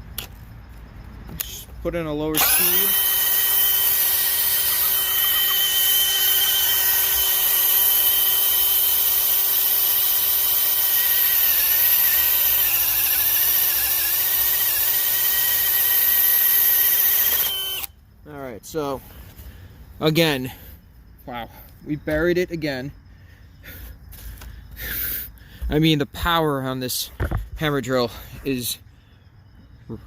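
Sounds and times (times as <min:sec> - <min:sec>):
cordless drill motor whine: 0:02.3 - 0:18.0.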